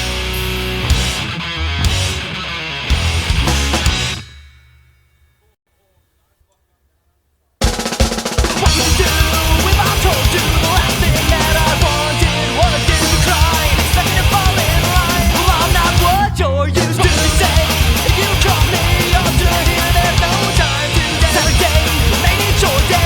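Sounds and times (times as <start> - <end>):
melodic lead guitar line: 0.0 - 4.2, 8.6 - 23.0
punk rock band: 0.0 - 4.2, 7.6 - 23.0
drum rolls and cymbals: 2.9 - 5.4, 7.6 - 23.0.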